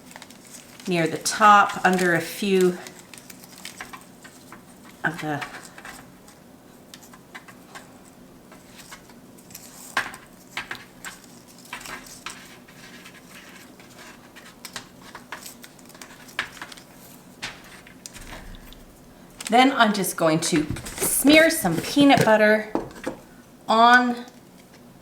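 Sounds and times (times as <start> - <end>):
faint rustling: 17.0 - 23.4.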